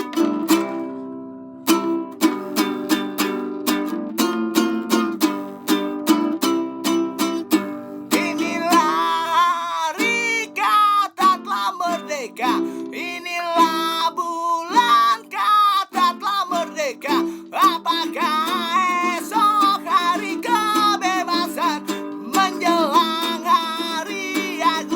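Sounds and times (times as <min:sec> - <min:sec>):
strummed plucked-string instrument: 0:00.0 - 0:24.9
person singing: 0:07.2 - 0:24.9.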